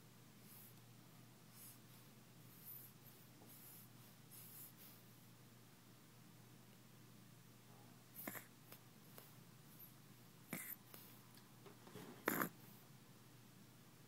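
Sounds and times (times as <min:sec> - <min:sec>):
baby snoring: 0:08.2 - 0:08.6, 0:10.5 - 0:10.8, 0:12.2 - 0:12.6.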